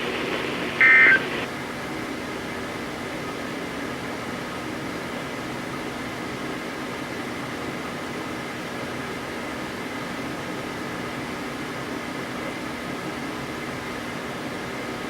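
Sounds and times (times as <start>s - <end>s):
radio static hiss: 0.0s - 1.5s.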